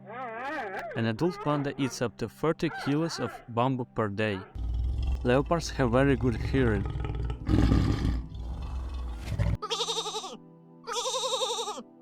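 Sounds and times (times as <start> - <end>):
animal bleating: 0.1 - 0.9, 4.6 - 12.0
leopard growling: 4.5 - 9.6.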